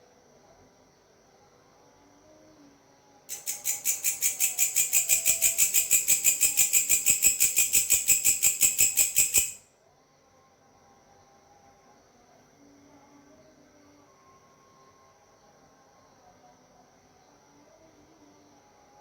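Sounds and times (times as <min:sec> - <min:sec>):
grasshopper chirping: 0:03.3 - 0:09.6.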